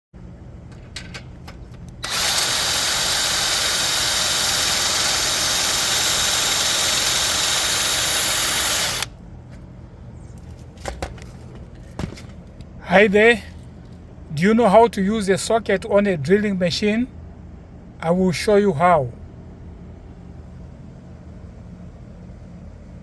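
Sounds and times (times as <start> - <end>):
power drill running: 2.0 - 9.2.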